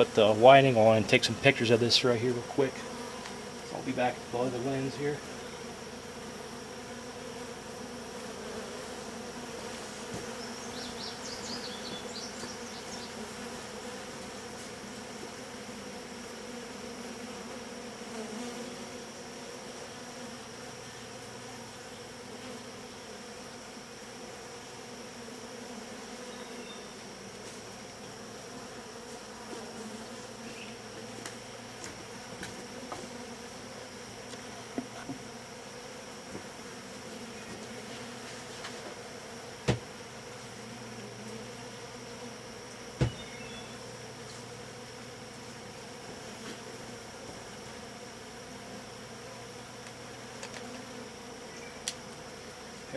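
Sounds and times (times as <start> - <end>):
honeybees buzzing: 0.0 - 52.9
sharp knocks: 39.6 - 39.9, 43.0 - 43.3.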